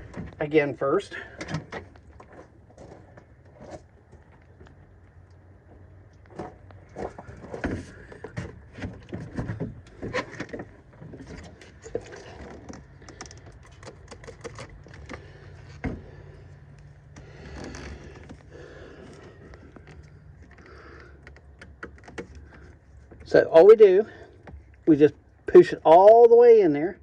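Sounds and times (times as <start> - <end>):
steady low hum: 0.0 - 25.9
clicks and rattles of hand work: 6.1 - 23.3.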